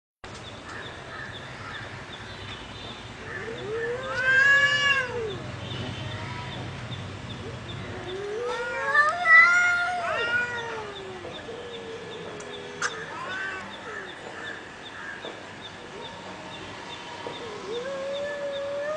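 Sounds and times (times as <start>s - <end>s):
cats yowling in a fight: 3.4s - 5.5s, 7.9s - 14.0s, 17.2s - 18.9s.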